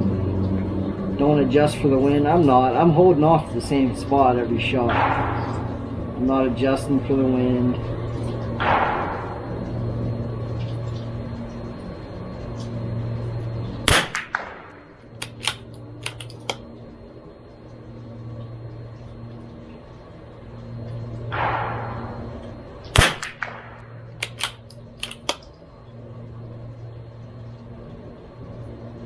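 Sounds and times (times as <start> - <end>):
steady low hum: 0.0 - 29.0
rifle shot: 13.9 - 16.5, 21.4 - 22.1, 22.9 - 25.4.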